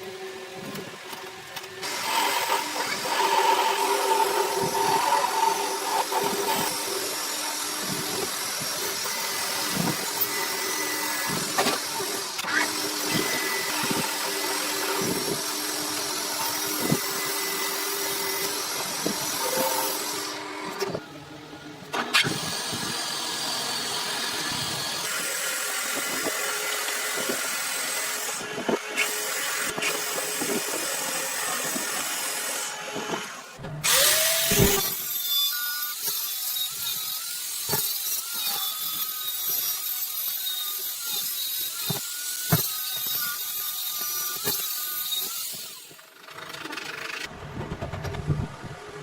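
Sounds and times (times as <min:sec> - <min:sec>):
metal lathe machining: 0:00.0 - 0:20.9.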